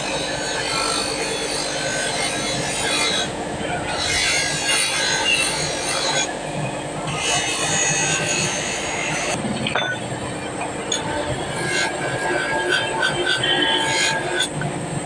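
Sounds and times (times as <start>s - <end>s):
abrasive rasping on steel: 0.0s - 6.3s, 10.9s - 14.6s
steady hum: 0.0s - 15.0s.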